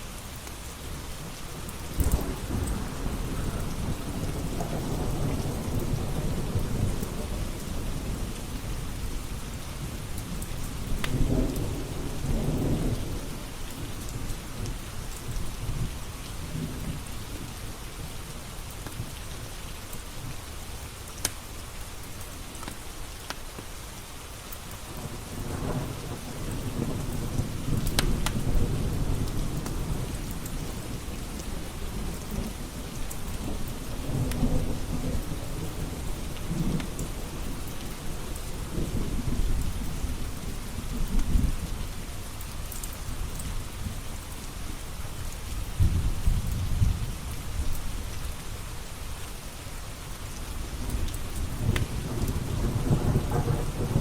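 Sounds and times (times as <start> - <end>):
steady rain: 0.0 - 54.0
low rolling thunder: 1.3 - 17.6, 25.0 - 42.2, 45.6 - 48.5, 50.6 - 54.0
fireplace fire crackling: 18.8 - 24.8, 26.2 - 46.5.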